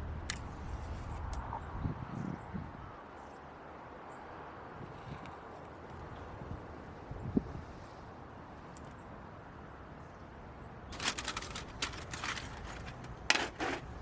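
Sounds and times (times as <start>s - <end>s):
steady low background noise: 0.0s - 14.0s
gear clattering and rustling: 11.0s - 14.0s.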